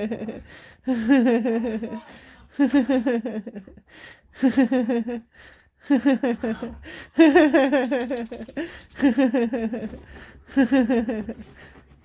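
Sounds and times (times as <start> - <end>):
woman laughing: 0.9 - 3.8, 5.9 - 9.9.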